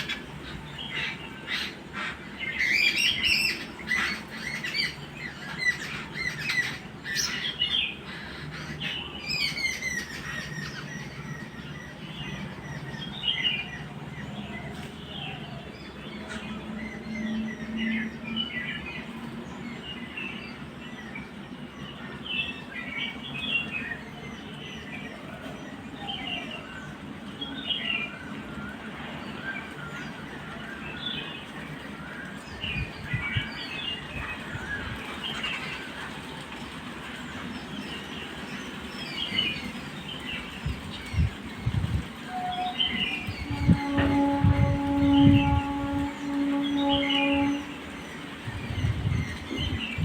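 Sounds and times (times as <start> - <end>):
outdoor hiss: 26.7 - 43.5.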